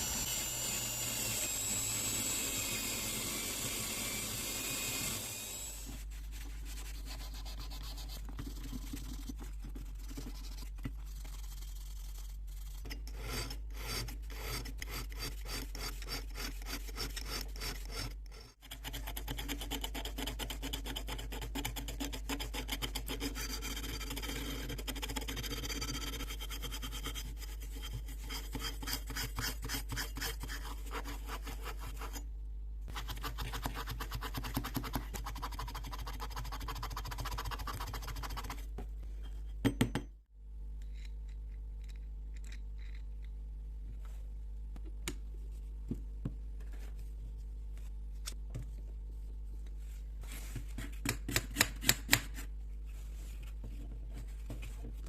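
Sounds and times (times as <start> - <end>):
hand tool rasping on metal part: 12.8 - 32.2.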